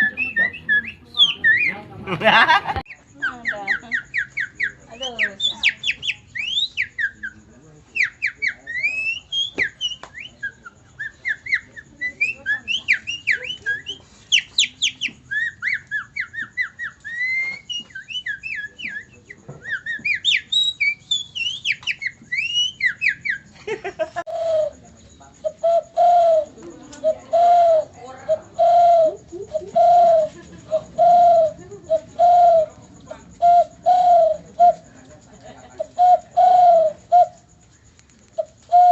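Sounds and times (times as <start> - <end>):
man whistling bird calls: 0.0 - 1.8, 8.0 - 23.4, 25.5 - 26.5, 38.4 - 38.9.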